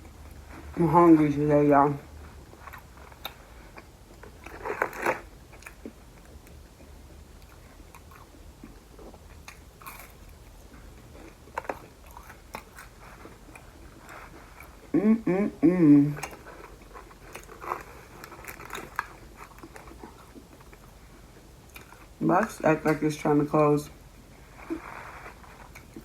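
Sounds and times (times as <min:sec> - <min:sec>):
chewing with wet mouth clicks: 0:02.5 - 0:14.8, 0:16.2 - 0:22.2.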